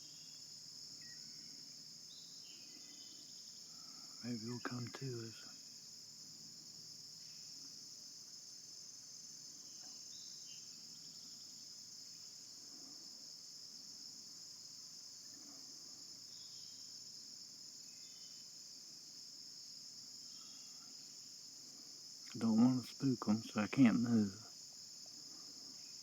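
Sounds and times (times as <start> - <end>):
faint insect chirps: 0.0 - 26.0
insect high-pitched trill: 0.0 - 26.0.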